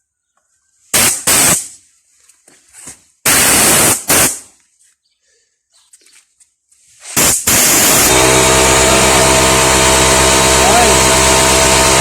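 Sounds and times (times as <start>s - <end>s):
compressed air blasts from hose: 0.9s - 1.8s, 3.2s - 4.5s, 7.0s - 12.0s.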